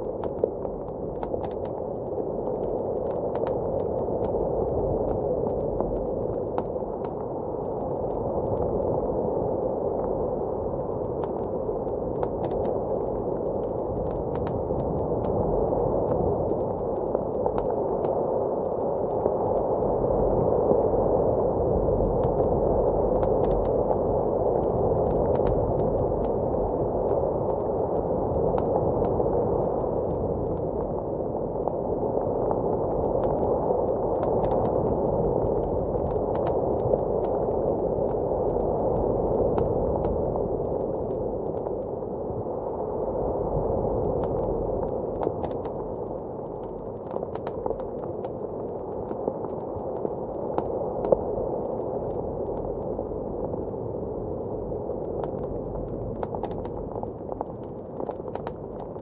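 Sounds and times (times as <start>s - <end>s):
muffled blizzard wind: 0.0s - 59.0s.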